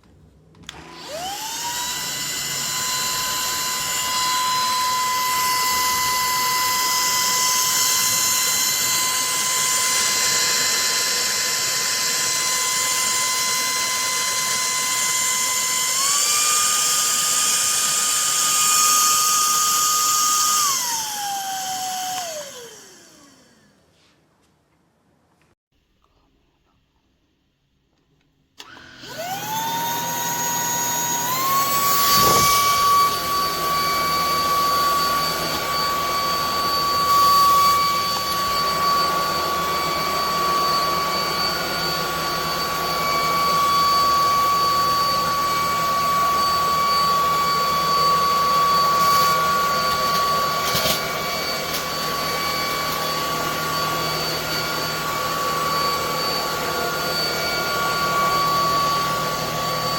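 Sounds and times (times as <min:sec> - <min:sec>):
vacuum cleaner motor whining: 0:00.6 - 0:23.8, 0:28.6 - 0:59.9.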